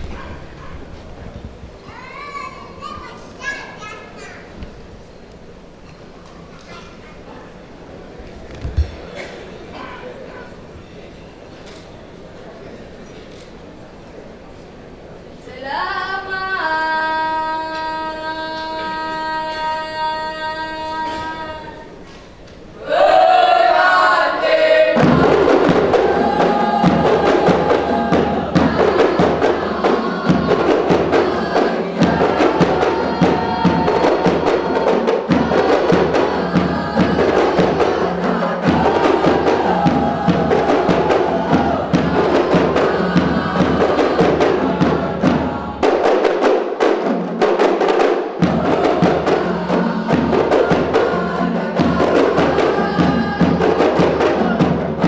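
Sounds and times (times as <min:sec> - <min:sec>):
music with fast percussion beat: 0:24.9 - 0:55.0.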